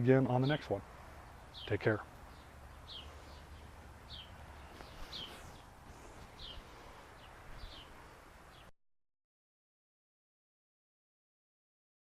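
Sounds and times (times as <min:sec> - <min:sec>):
bird chirping: 0:00.0 - 0:08.7
faint steady hiss: 0:00.0 - 0:08.7.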